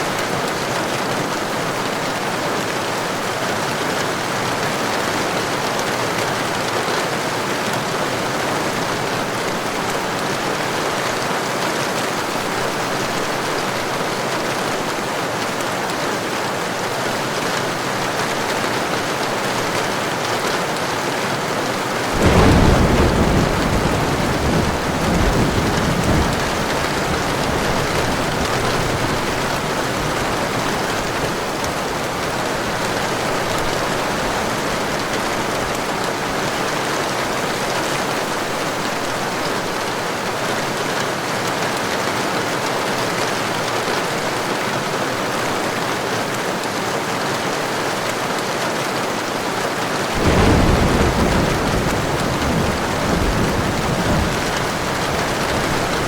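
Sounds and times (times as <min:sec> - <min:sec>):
heavy rain: 0:00.0 - 0:56.0
thunder clap and rumble: 0:22.1 - 0:35.8, 0:50.2 - 0:56.0.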